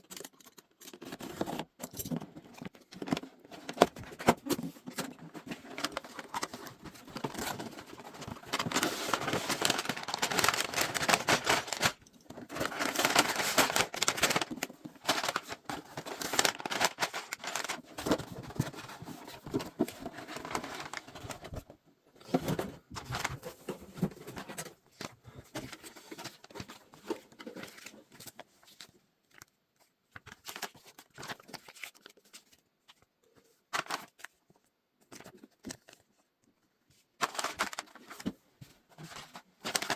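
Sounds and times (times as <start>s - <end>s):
plastic bags crinkling: 4.9s - 18.6s, 37.2s - 38.0s, 39.6s - 39.9s
cardboard tearing: 7.2s - 18.2s.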